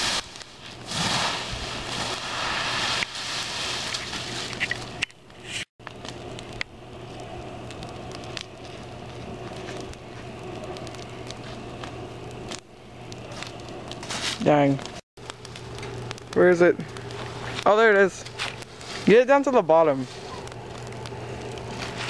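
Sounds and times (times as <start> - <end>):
rushing hiss: 0.0 - 4.5
fire crackling and popping: 0.0 - 22.0.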